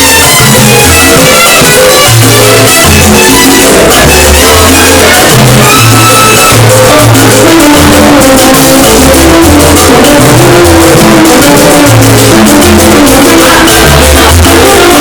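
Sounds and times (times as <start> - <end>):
loud salsa music: 0.0 - 15.0.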